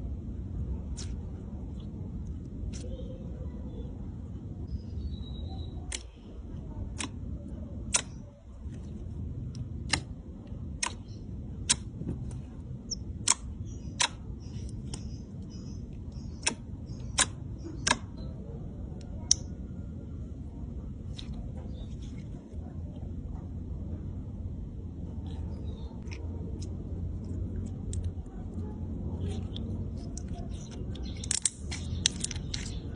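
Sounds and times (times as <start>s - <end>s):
low steady hum: 0.0s - 32.9s.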